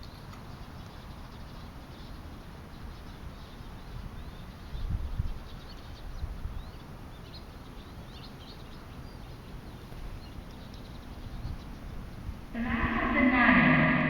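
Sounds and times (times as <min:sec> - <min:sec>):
small birds chirping: 0:00.0 - 0:13.7
low outdoor rumble: 0:12.4 - 0:14.0.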